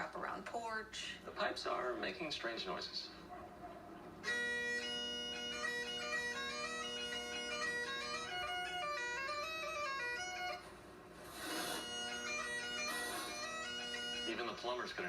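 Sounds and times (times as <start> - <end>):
bagpipes playing: 4.2 - 10.8, 11.4 - 15.0
breathy hiss: 10.7 - 13.7.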